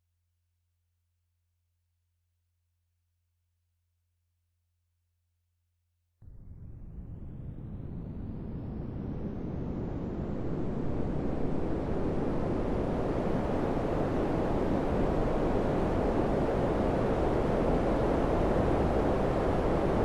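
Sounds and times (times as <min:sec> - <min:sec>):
air conditioner fan airflow: 0:09.3 - 0:20.0.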